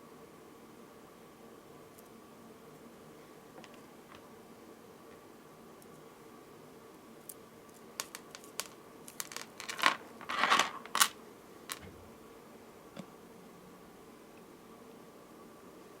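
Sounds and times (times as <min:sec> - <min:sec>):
beads clicking and rattling: 0:08.0 - 0:11.8.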